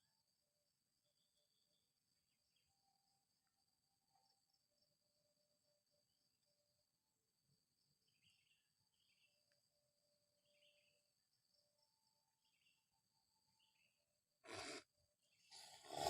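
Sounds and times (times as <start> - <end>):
faint insect trilling: 7.9 - 16.0.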